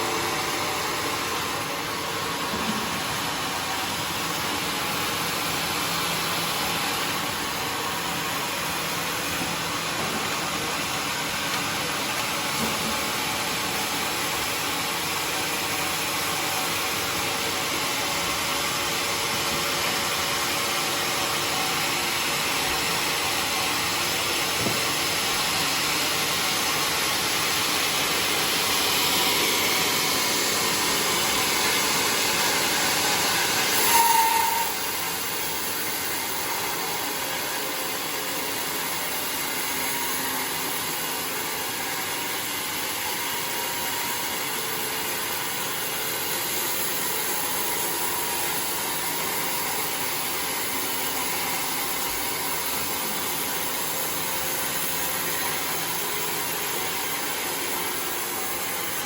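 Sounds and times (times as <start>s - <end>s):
saw cutting through timber: 0.0s - 59.0s
saw blade squeal: 32.4s - 36.3s.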